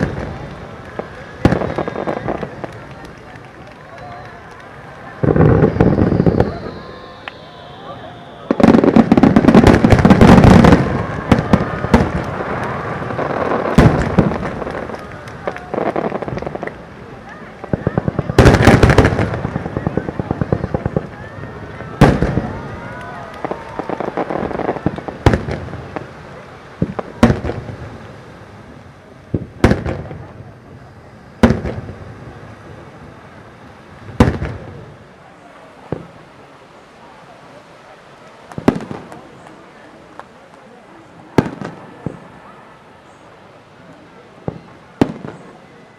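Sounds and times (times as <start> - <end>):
fireworks bursts: 0.0 - 45.9
small fireworks cracks: 0.0 - 45.9
small firework pop: 38.5 - 40.6.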